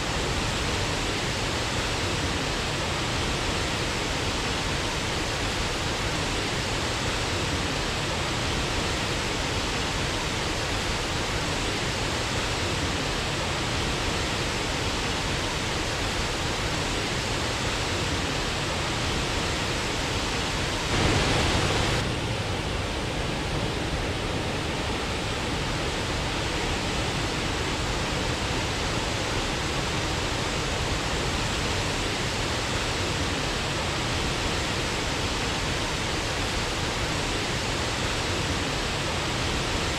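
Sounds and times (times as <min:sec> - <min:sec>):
waterfall rushing: 0:14.0 - 0:39.9.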